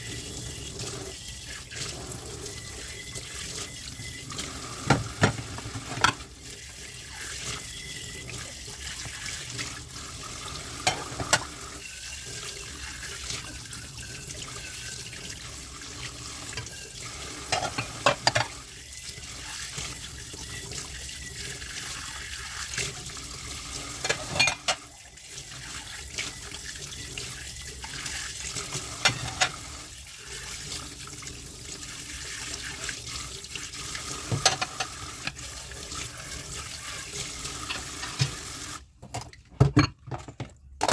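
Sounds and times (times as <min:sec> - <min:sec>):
tap water running into sink: 0:00.0 - 0:40.9
dishes clinking together: 0:10.8 - 0:11.5, 0:17.5 - 0:18.6, 0:24.0 - 0:24.9, 0:29.0 - 0:29.6, 0:34.4 - 0:34.9.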